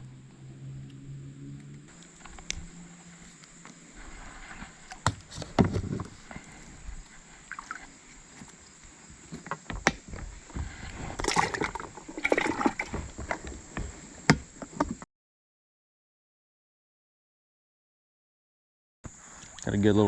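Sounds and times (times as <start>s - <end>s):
water sloshing and splashing: 4.5s - 8.5s, 10.5s - 13.4s.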